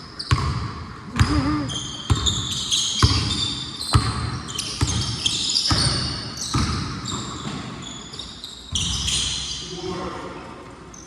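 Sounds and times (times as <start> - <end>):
sneaker squeaks: 0.0 - 9.8
basketball bouncing on court: 0.2 - 7.9, 8.7 - 9.3.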